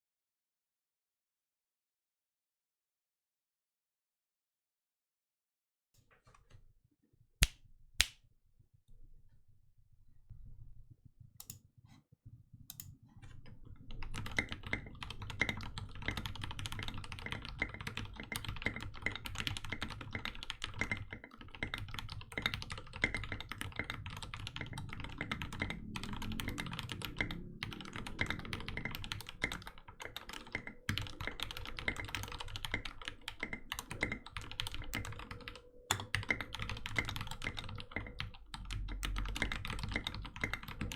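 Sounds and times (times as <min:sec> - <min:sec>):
mechanical keyboard typing: 0:12.7 - 0:40.9.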